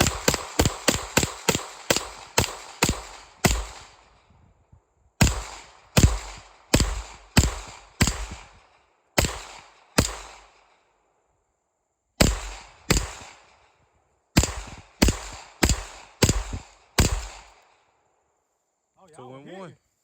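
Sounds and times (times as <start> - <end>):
semi-automatic gunshots: 0.0 - 4.1, 5.2 - 10.7, 12.2 - 13.7, 14.4 - 17.6.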